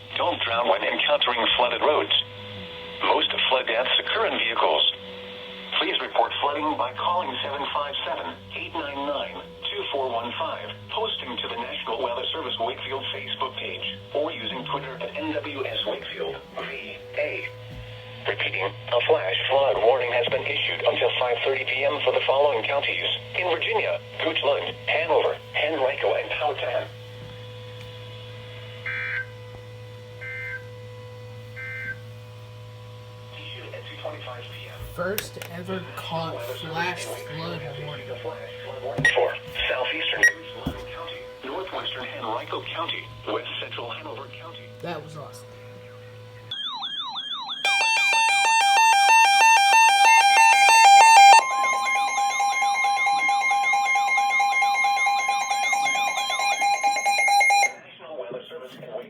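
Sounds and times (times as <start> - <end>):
radio low hum: 0.0 - 46.5, 47.7 - 56.4
steady held tone: 0.0 - 57.8
warbling data tones: 35.6 - 57.8
stepped beeps: 39.0 - 43.6.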